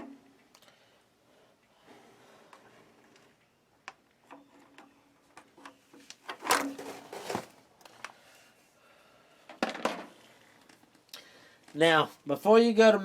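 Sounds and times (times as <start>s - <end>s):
rustling scrape: 6.4s - 7.6s.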